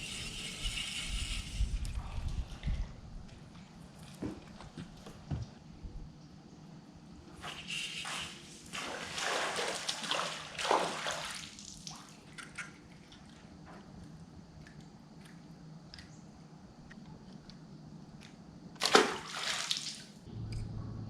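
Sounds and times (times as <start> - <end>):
water splashing and sloshing: 7.3 - 16.1, 18.8 - 20.2.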